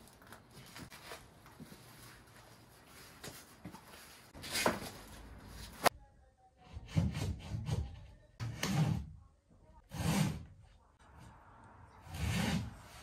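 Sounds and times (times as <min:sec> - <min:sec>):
rubbing and scraping: 0:12.0 - 0:13.0.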